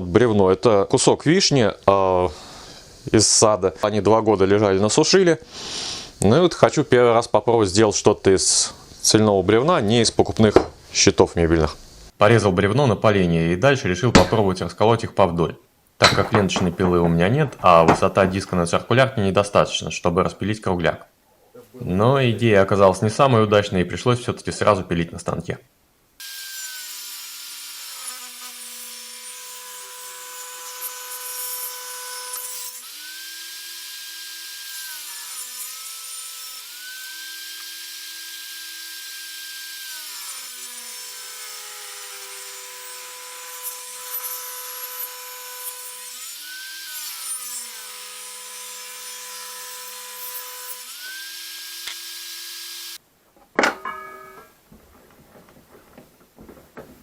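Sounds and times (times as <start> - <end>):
sharp knock: 14.1 - 14.4
circular saw cutting wood: 26.2 - 53.0.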